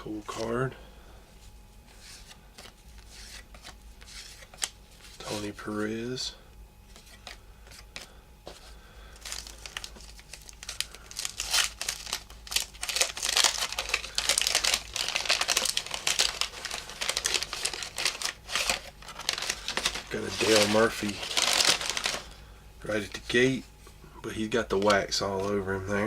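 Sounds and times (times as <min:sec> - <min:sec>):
wax paper wrapper crinkling: 0:09.1 - 0:23.4.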